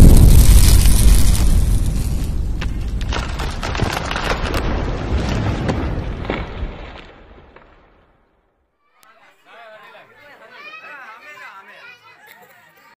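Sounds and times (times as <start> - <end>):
deep rumbling boom with crackles: 0.0 - 8.4.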